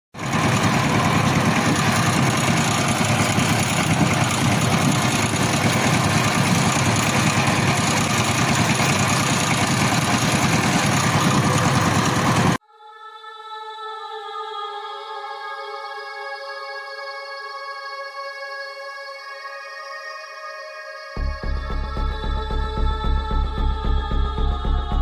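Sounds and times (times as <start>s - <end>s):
diesel engine running steadily: 0.2s - 12.6s.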